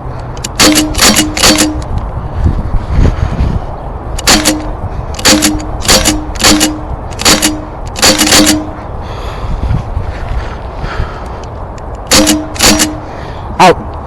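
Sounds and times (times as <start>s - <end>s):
air gun shots: 0.4s - 1.9s, 4.2s - 8.8s, 12.0s - 13.1s.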